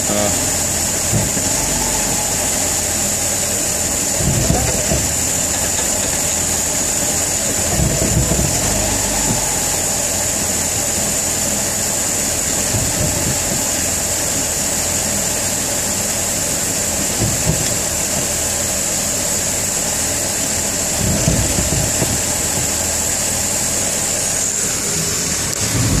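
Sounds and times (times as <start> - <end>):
short low thumps: 0.0 - 10.4, 12.5 - 14.0, 21.0 - 22.9, 25.6 - 26.0
car engine running: 0.0 - 26.0
steady high whine: 0.0 - 26.0.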